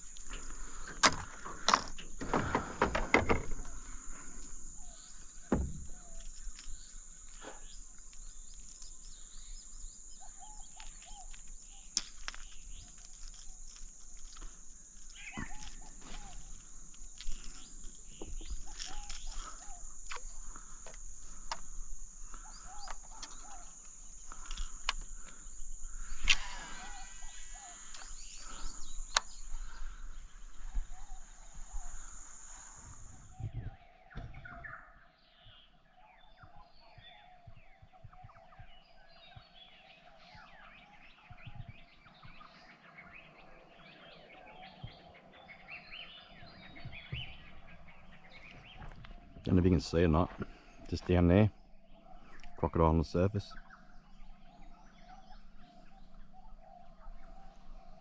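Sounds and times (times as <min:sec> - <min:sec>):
birds chirping and calling: 0:00.0 - 0:58.0
low steady hum: 0:44.8 - 0:58.0.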